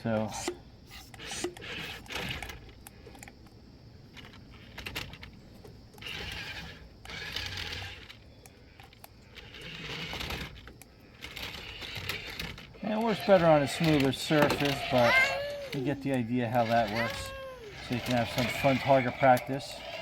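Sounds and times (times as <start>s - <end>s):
toy motor whirring: 0.3s - 3.3s, 4.1s - 5.3s, 5.9s - 20.0s
plastic clicks and rattles: 4.1s - 19.6s.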